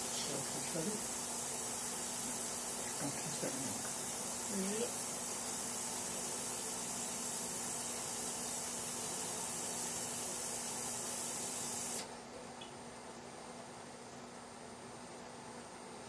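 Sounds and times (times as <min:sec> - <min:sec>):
spraying hiss: 0:00.0 - 0:12.1.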